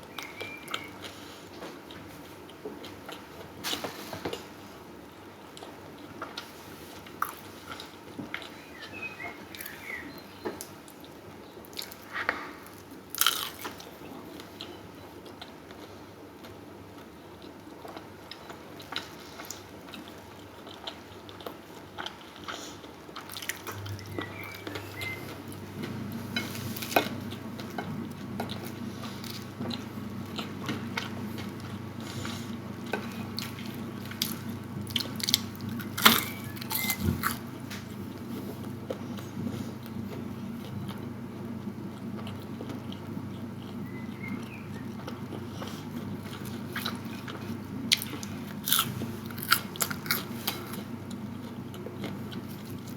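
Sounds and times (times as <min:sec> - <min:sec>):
person chewing food: 0:00.1 - 0:52.9
low hum: 0:23.6 - 0:37.0.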